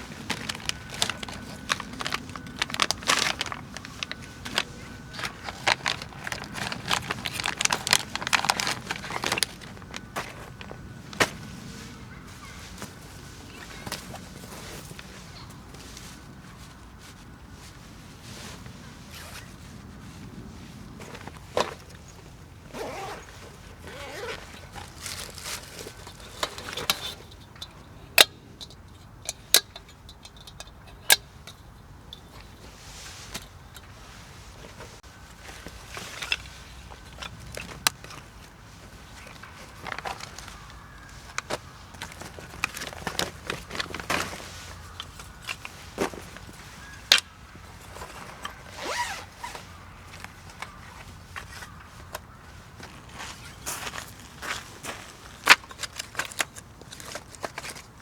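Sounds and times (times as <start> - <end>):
gear rustling: 0.0 - 27.9, 28.6 - 58.0
zipper pulled: 19.1 - 19.5, 22.7 - 25.0, 48.7 - 49.7.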